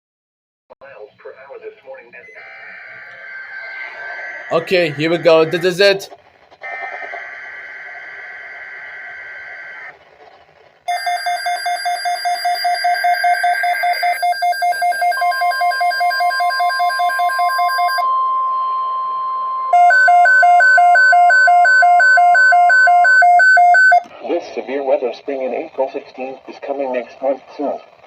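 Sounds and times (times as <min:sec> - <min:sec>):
steady warning tone: 0:01.2 - 0:10.0, 0:10.9 - 0:24.1
data tone bursts: 0:02.1 - 0:06.0
rapid beeping alarm: 0:02.1 - 0:09.9, 0:10.9 - 0:24.1.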